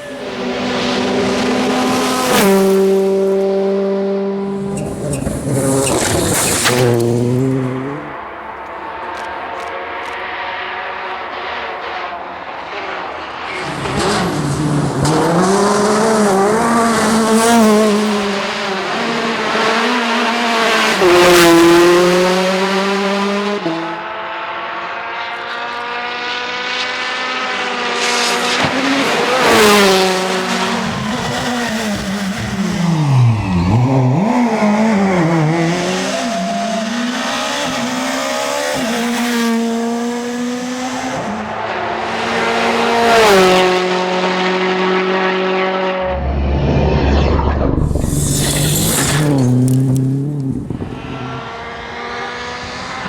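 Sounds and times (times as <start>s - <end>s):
rally car engines revving: 0.0s - 53.0s
tyre squeal: 4.6s - 7.3s, 47.8s - 50.3s.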